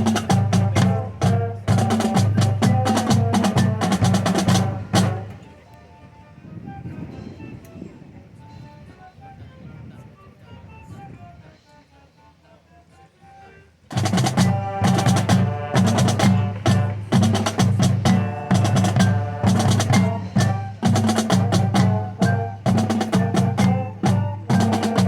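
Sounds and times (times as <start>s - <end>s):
pitched bass drums: 0.0s - 5.4s, 13.9s - 25.0s
snare drums: 0.0s - 5.4s, 13.9s - 25.0s
mallet percussion notes: 0.0s - 5.7s, 13.9s - 25.0s
sustained keyboard notes: 0.0s - 25.0s.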